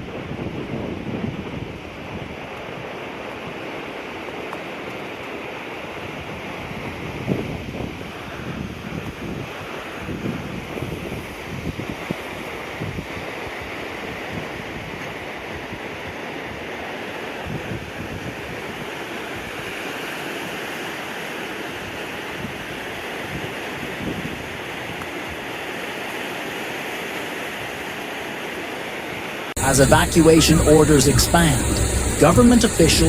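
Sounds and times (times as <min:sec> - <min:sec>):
floodwater rushing: 0:29.6 - 0:33.0.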